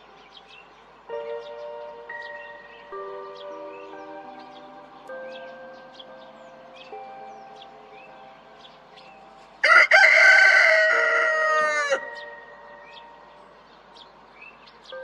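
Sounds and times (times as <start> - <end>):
rooster crowing: 9.6 - 12.3.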